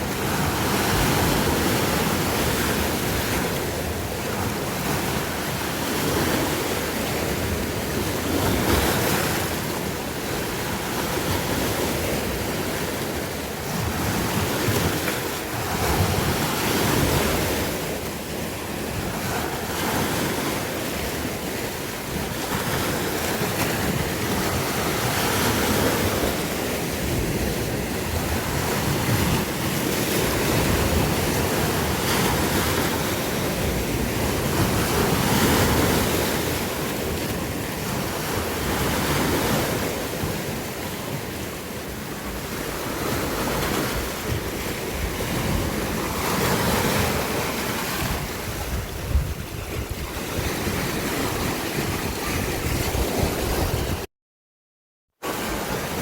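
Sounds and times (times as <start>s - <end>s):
sea waves breaking on shore: 0.0s - 54.1s, 55.2s - 56.0s
wind buffeting microphone: 42.6s - 54.1s.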